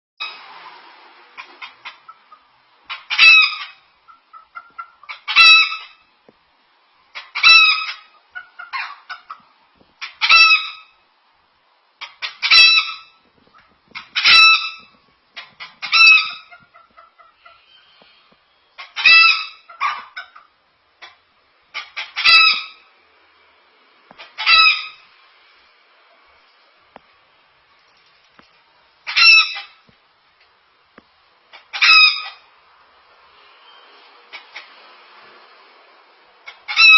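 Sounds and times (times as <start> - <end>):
cockatoo clucking like a chicken: 1.4 - 6.1, 7.1 - 11.0, 12.0 - 17.7, 18.8 - 22.9, 24.1 - 25.0, 29.0 - 29.9, 31.5 - 32.5, 36.4 - 36.9.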